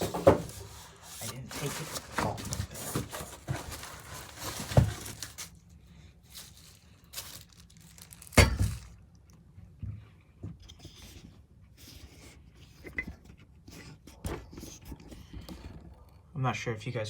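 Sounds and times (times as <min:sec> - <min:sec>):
packing material rustling: 0:00.0 - 0:09.0.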